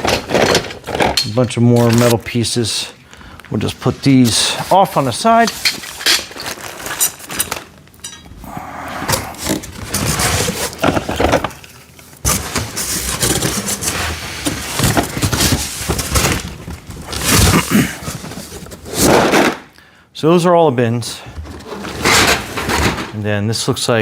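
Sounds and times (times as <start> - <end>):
packaging rustling: 5.9 - 7.7, 9.1 - 19.3
metal brackets and bins clattering: 21.4 - 23.2.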